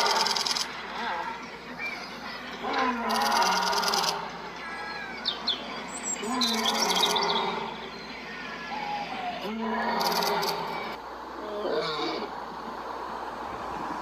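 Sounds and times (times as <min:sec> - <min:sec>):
small birds chirping: 0:00.0 - 0:11.0
lion roaring: 0:02.6 - 0:04.3, 0:06.2 - 0:07.8, 0:09.4 - 0:12.3.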